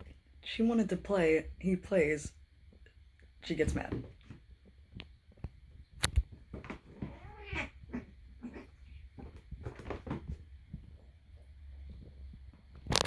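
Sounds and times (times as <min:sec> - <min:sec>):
cats scuffling: 0:03.5 - 0:13.0
cat whiny call: 0:07.0 - 0:08.8.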